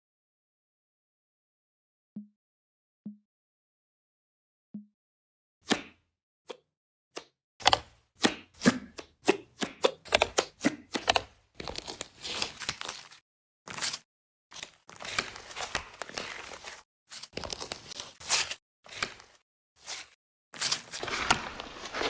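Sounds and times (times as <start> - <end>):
paper tearing and crinkling: 11.6 - 22.0.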